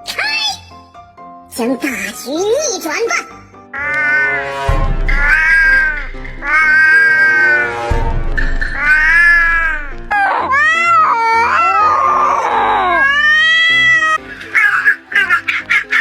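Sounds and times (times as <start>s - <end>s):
background music: 0.0s - 16.0s
cat meowing and yowling: 3.8s - 4.4s, 5.1s - 7.9s, 8.7s - 16.0s.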